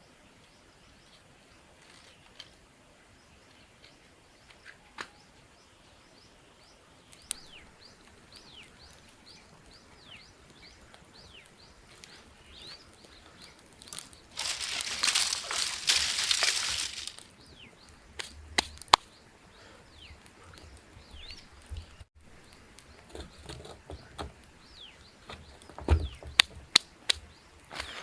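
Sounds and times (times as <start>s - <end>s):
outdoor background noise: 0.0s - 28.0s
loud crunching: 10.9s - 19.1s.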